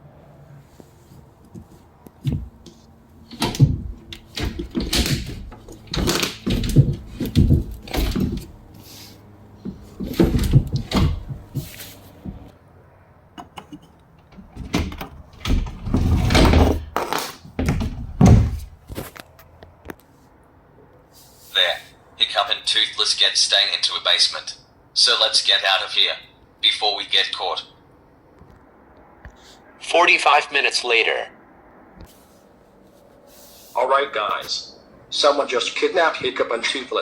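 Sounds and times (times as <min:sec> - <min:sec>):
toys knocking and clattering: 0:01.5 - 0:08.7, 0:09.6 - 0:12.4, 0:13.4 - 0:19.2
door-like thuds: 0:01.6 - 0:12.5, 0:14.3 - 0:19.0.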